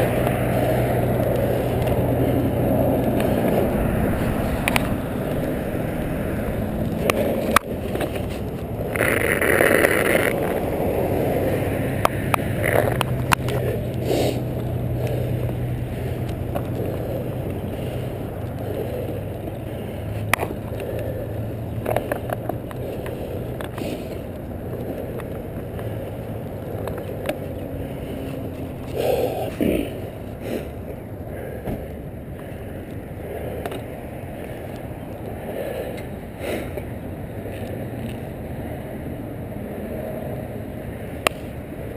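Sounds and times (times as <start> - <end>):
car engine running: 0.0 - 31.0
road noise inside car: 0.0 - 41.9
rush of noise: 0.0 - 41.9.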